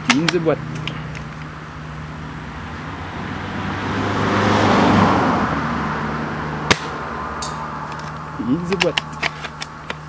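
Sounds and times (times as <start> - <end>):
car passing by: 2.4 - 8.3
steady low hum: 5.4 - 10.0.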